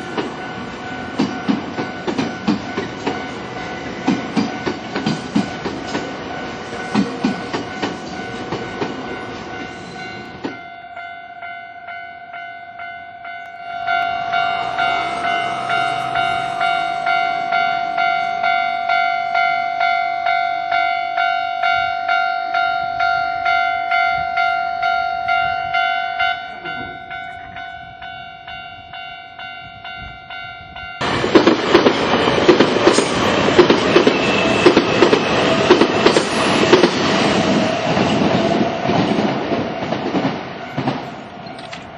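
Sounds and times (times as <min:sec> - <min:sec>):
train wheels clattering over rails: 0:00.0 - 0:10.6, 0:31.0 - 0:41.9
level crossing warning bell: 0:00.0 - 0:38.8.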